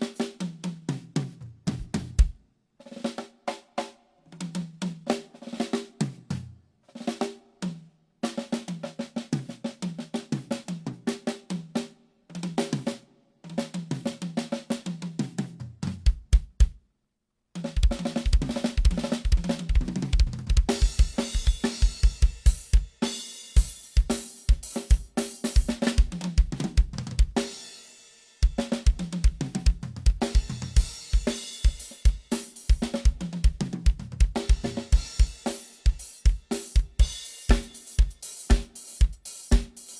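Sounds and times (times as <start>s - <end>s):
fast bass drum strokes: 17.8s - 23.0s, 28.9s - 39.9s
tom and snare fills: 17.8s - 27.6s, 28.4s - 39.9s.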